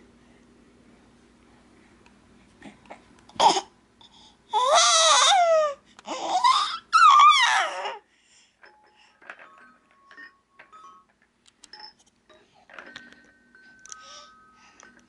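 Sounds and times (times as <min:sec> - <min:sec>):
child squealing: 0:04.6 - 0:08.0.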